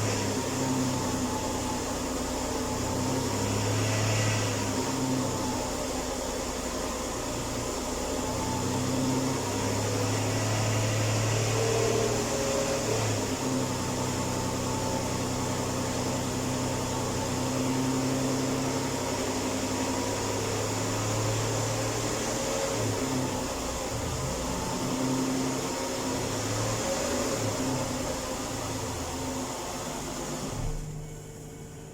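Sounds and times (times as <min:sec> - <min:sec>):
car engine humming and hissing: 0:00.0 - 0:31.9.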